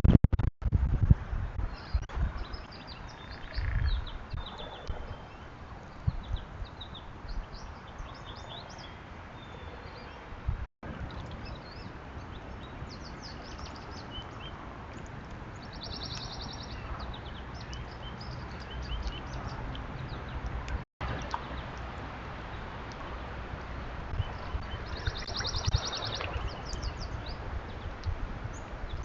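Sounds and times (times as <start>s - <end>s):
birds chirping and whistling: 24.2s - 27.8s.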